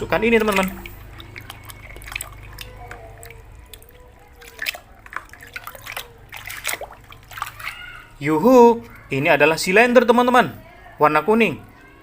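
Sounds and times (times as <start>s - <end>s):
water dripping and splashing: 0.0s - 9.2s.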